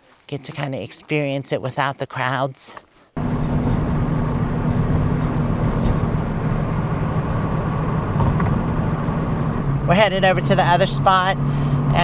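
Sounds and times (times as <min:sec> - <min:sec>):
vehicle engine and road drone: 0:03.2 - 0:12.0.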